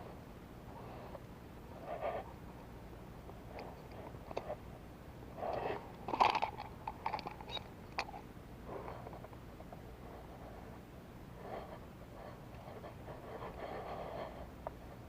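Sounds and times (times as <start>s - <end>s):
handling rustles and clicks: 5.4s - 9.8s.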